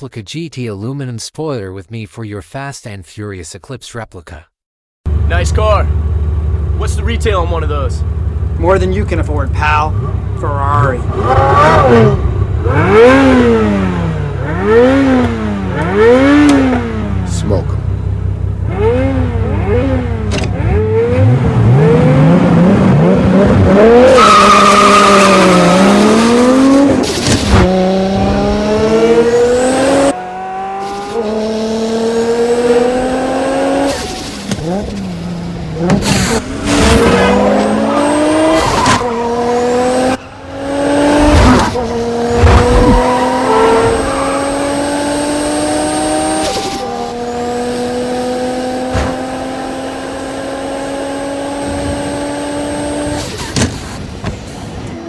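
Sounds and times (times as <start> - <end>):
sports car engines revving: 5.1 - 55.0.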